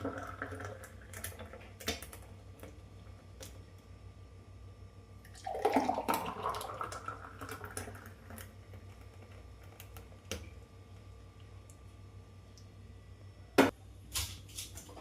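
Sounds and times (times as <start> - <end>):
smoothie gurgling into glass: 0.0 - 1.0, 5.3 - 8.5.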